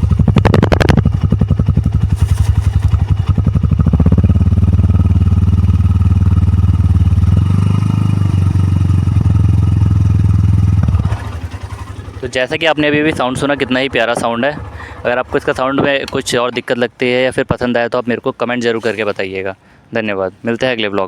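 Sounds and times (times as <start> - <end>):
motorcycle engine revving: 0.0 - 16.2.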